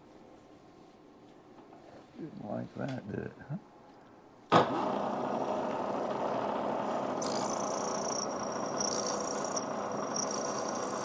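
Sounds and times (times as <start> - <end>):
electric drill running: 4.8 - 11.0
high thin whine: 6.1 - 11.0.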